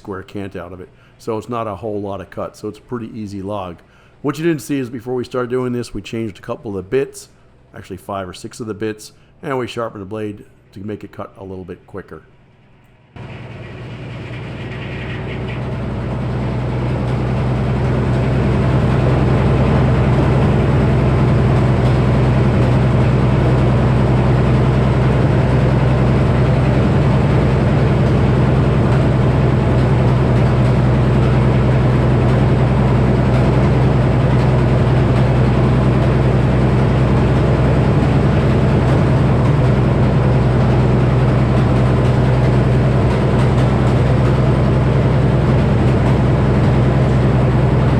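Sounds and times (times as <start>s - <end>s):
engine drone: 13.1s - 47.9s
sawmill saw running: 13.2s - 47.9s.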